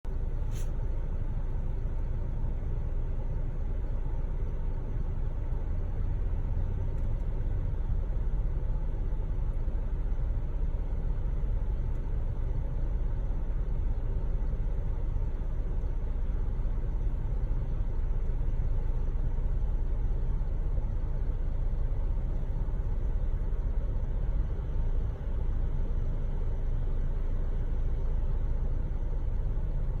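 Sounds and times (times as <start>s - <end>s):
car engine idling: 0.0s - 30.0s.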